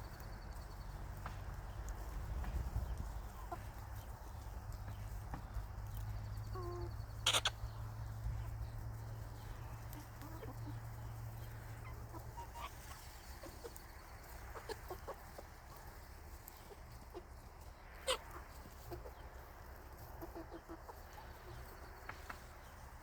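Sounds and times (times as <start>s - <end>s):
hens clucking: 0.0s - 23.0s.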